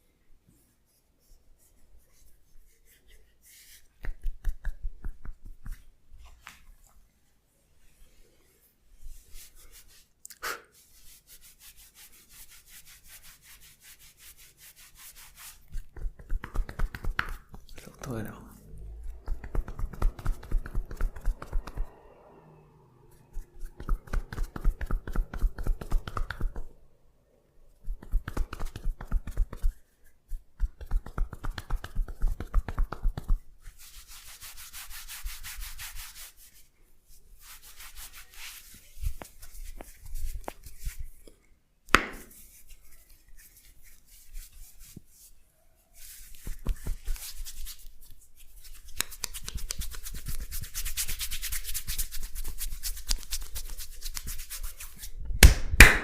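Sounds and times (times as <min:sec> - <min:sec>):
sharp loud snap: 0:41.9 - 0:42.4, 0:55.4 - 0:56.0.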